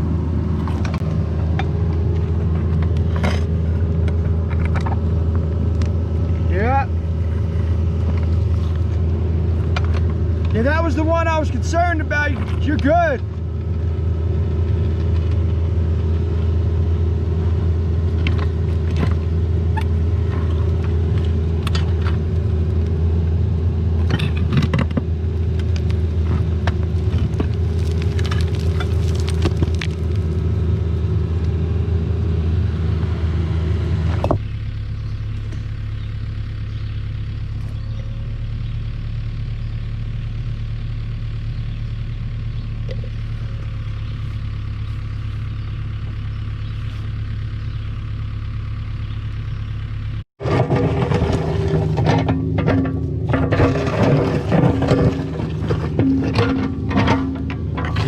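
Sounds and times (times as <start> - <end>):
excavator diesel engine: 0.0 - 58.0
clinks and scrapes: 0.6 - 5.0, 24.0 - 25.0, 25.6 - 30.4, 50.4 - 58.0.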